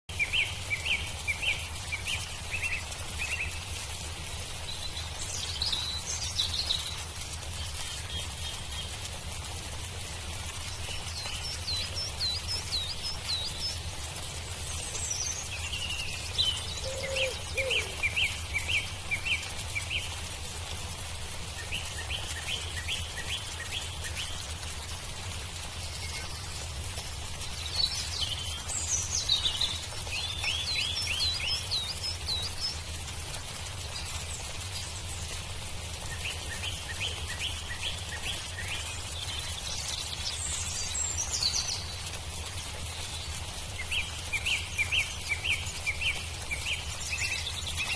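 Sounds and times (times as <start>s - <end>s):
birds calling: 16.5s - 18.2s.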